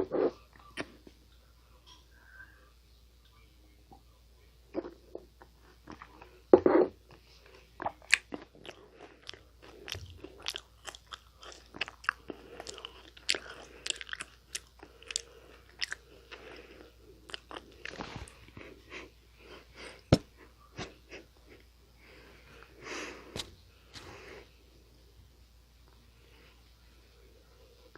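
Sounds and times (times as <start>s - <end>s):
crisp cookie crunching: 7.2s - 21.6s.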